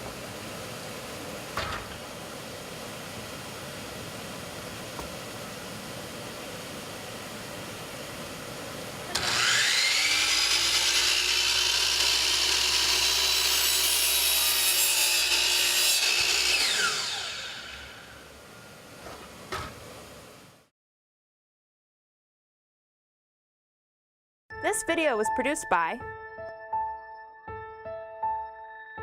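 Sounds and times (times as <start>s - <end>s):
miter saw motor whining: 9.1s - 14.1s, 16.0s - 18.3s.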